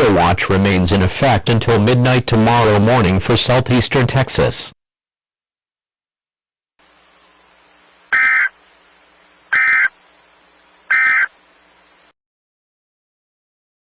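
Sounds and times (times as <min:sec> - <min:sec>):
faint hiss and hum: 0:06.8 - 0:12.2
digital data squawk bursts: 0:08.2 - 0:08.6, 0:09.5 - 0:09.9, 0:10.9 - 0:11.3.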